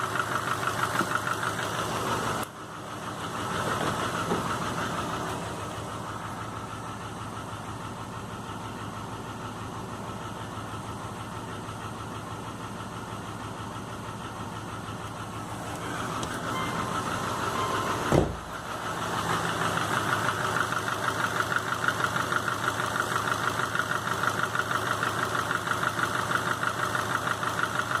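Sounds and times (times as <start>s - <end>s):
car engine idling with knock: 0.0s - 28.0s
sharp thump: 18.1s - 18.5s.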